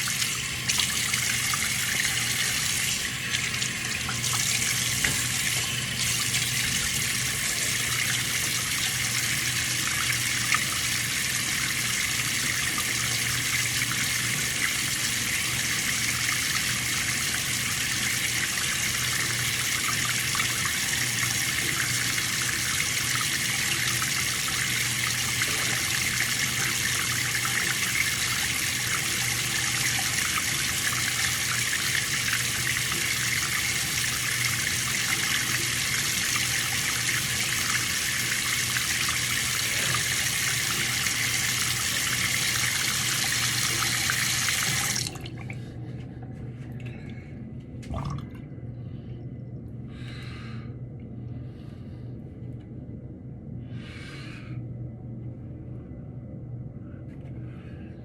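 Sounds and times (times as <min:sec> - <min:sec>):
water running: 0:00.0 - 0:45.7, 0:47.8 - 0:48.4
faint low hum: 0:32.6 - 0:58.0.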